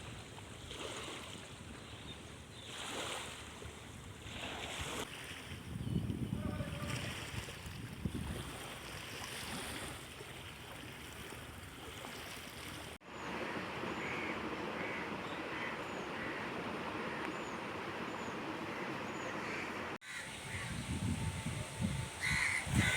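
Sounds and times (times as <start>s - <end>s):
wind rumble on microphone: 4.3s - 8.9s, 20.2s - 22.9s
river water rushing: 12.0s - 20.7s
steady outdoor hiss: 12.1s - 22.9s.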